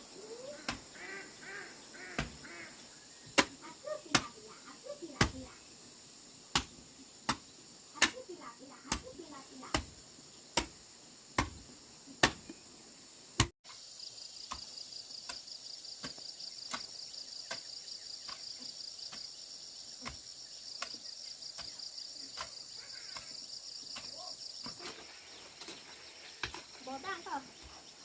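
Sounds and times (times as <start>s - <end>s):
insects trilling: 0.0s - 28.0s.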